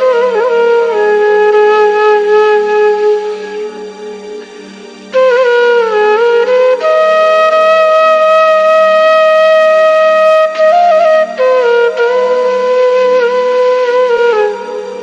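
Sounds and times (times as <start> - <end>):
flute playing held notes: 0.0 - 15.0.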